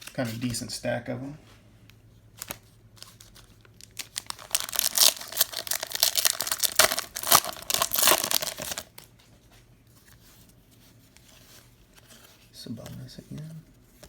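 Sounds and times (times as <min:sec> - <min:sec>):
wrapper tearing and crinkling: 0:02.4 - 0:09.0.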